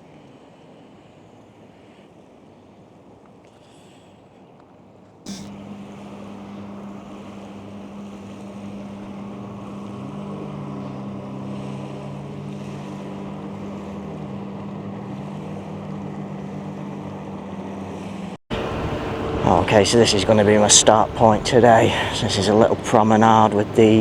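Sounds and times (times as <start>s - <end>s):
motor humming: 5.3s - 24.0s
surf: 5.3s - 24.0s.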